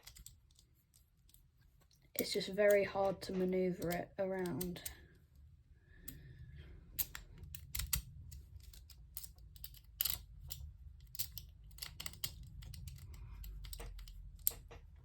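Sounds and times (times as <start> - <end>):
lock pick clicking in lock: 7.0 - 14.8.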